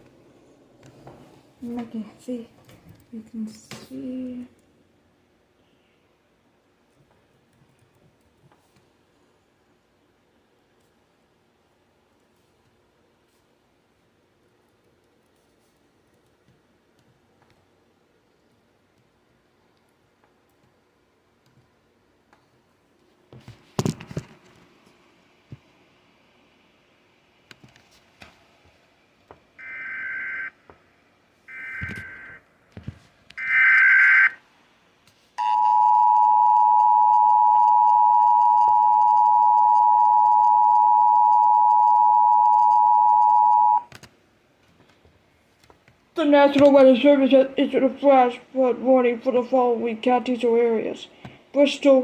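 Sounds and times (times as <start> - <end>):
two-tone attention signal: 35.4 - 43.8.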